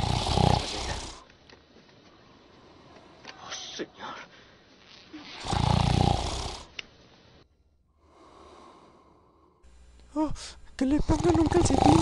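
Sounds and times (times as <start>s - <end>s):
man snoring: 0.0s - 1.2s, 5.4s - 6.7s, 11.1s - 12.0s
breath: 8.0s - 9.7s.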